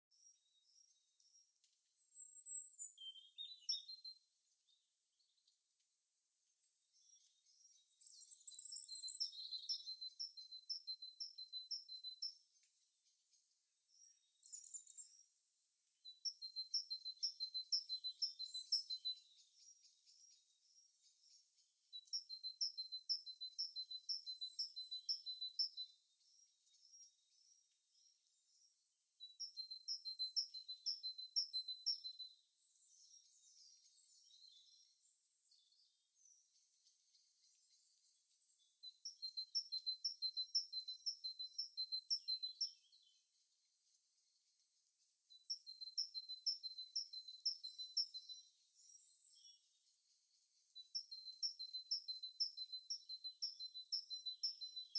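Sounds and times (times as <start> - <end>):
songbird singing: 0.0 - 54.9
birds chirping: 0.2 - 4.8, 7.0 - 15.3.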